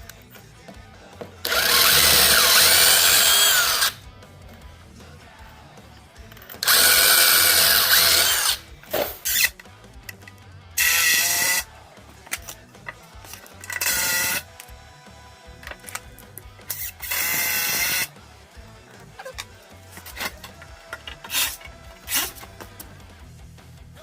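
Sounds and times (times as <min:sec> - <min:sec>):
power tool whirring: 0:01.4 - 0:04.0, 0:06.4 - 0:09.6, 0:10.8 - 0:11.7, 0:13.2 - 0:14.7, 0:15.6 - 0:18.1, 0:19.1 - 0:22.9.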